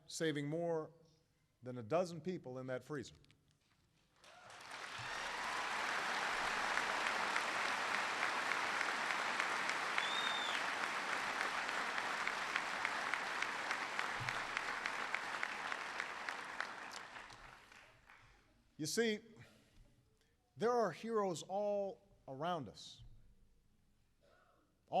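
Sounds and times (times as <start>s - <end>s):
audience applauding: 4.2s - 18.4s.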